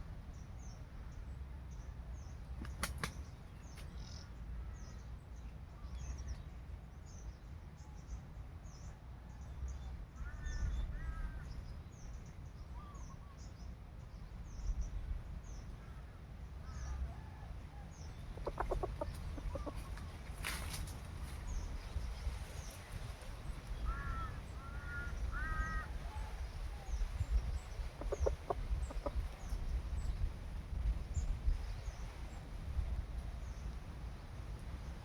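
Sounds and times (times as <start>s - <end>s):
steady low rumble: 13.6s - 35.0s
chickens clucking: 18.3s - 20.6s, 27.8s - 29.6s.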